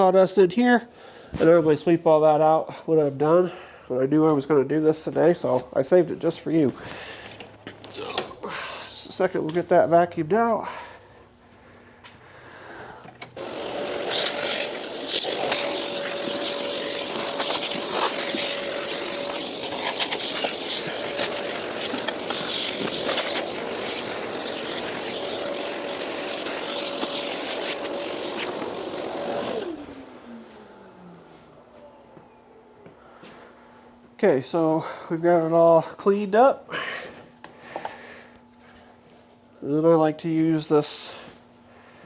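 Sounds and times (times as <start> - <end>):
vacuum motor whine: 13.1 - 33.0
wood chips rattling up hose: 13.4 - 30.1.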